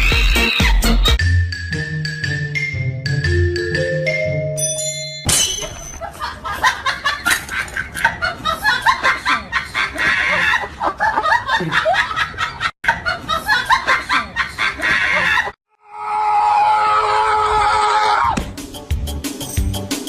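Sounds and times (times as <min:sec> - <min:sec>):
snickering and chuckling laughter: 0:06.0 - 0:15.6.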